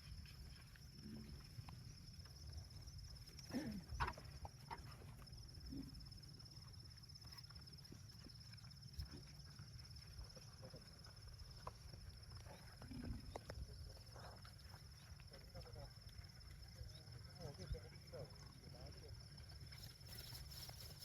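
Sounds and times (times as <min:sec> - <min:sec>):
insect drone: 0:00.0 - 0:21.0.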